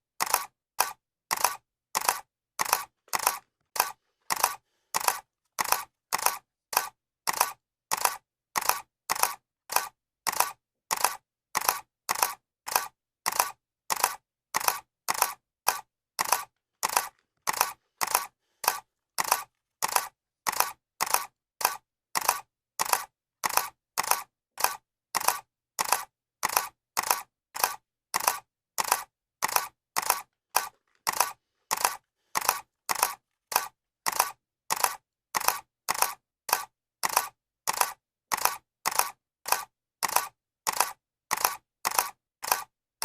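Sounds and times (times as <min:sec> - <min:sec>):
camera shutter clicks: 0:00.2 - 0:42.7.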